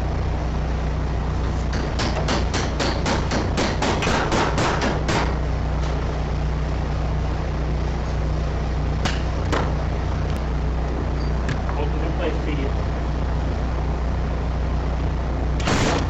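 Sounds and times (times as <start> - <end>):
engine humming: 0.0 - 16.0
rapid hammering: 1.7 - 5.4.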